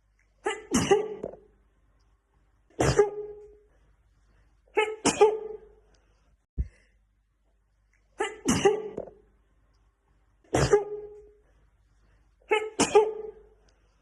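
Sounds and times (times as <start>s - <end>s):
woman sneezing: 0.4s - 1.3s, 2.8s - 3.4s, 4.8s - 5.6s, 8.2s - 9.0s, 10.5s - 11.2s, 12.5s - 13.4s.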